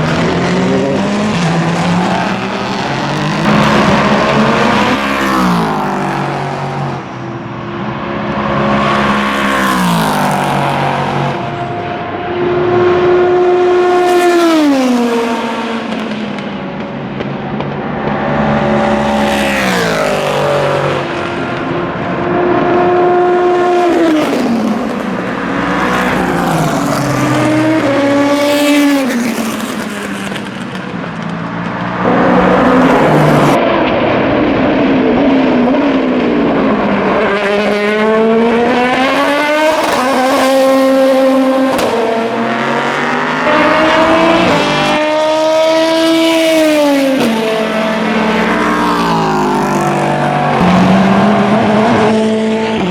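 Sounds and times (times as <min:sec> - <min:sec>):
race cars passing at speed: 0:00.0 - 0:52.9.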